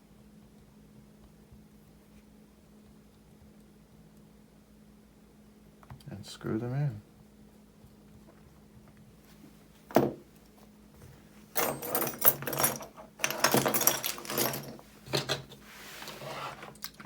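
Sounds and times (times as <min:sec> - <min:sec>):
tools clattering and rustling: 0:09.9 - 0:10.3, 0:11.4 - 0:17.0.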